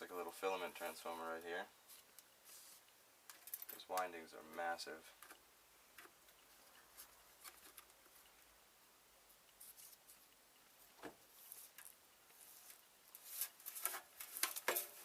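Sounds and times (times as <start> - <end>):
faint rustles: 0.4 - 5.3, 9.2 - 15.0.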